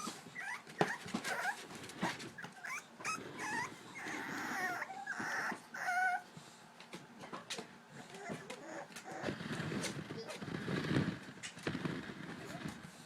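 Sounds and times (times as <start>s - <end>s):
puppies whining and yipping: 0.0s - 6.3s, 8.0s - 9.5s.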